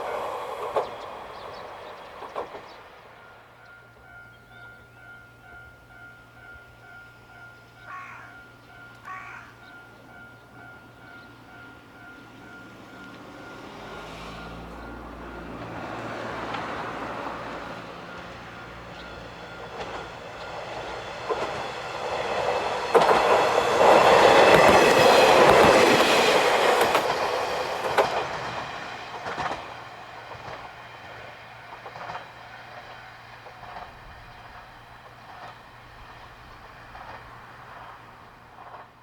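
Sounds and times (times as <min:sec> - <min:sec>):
train wheels clacking over rail joints: 0:00.0 - 0:03.2, 0:12.0 - 0:39.0
railcar engine rumble: 0:00.0 - 0:39.0.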